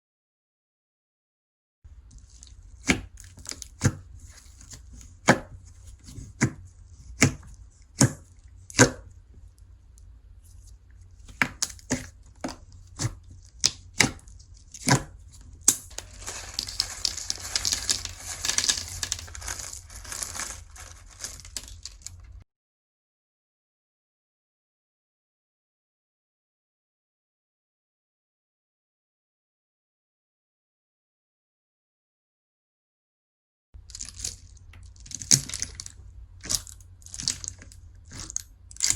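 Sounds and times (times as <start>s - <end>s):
fine crackling: 15.9s - 22.4s.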